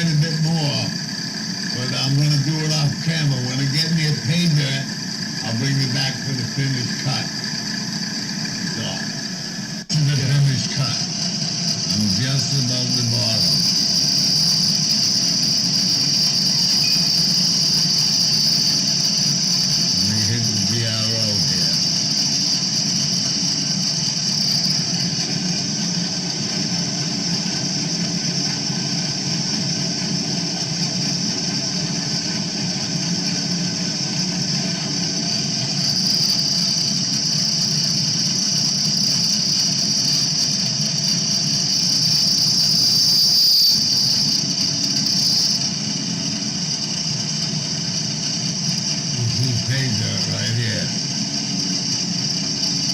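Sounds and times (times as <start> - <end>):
milling cutter squealing on metal: 0.0 - 29.8, 31.4 - 52.9
milling machine humming: 0.0 - 52.9.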